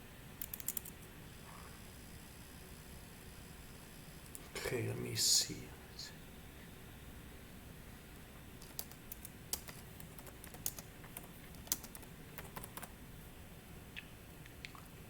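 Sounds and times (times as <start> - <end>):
low hiss: 0.0 - 15.0
typing on computer keyboard: 0.4 - 1.0, 8.6 - 12.9.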